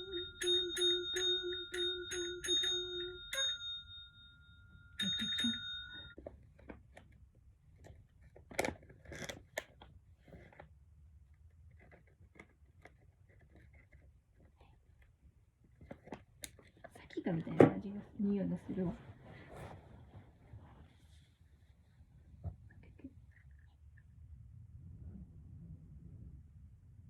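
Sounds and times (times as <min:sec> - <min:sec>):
small bell dinging: 0:00.0 - 0:06.2
rustling noise: 0:18.4 - 0:22.7.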